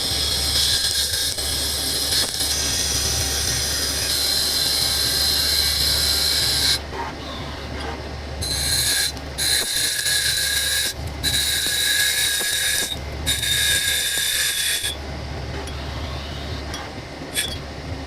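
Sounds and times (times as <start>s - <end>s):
lathe cutting whine: 0.0s - 6.9s, 8.2s - 15.1s
machine low hum: 0.0s - 18.0s.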